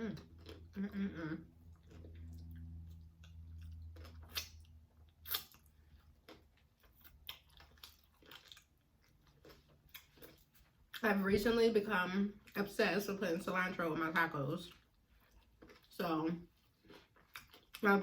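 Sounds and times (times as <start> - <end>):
chewing and biting food: 0.0 - 11.0, 14.7 - 18.0
low steady hum: 0.0 - 18.0.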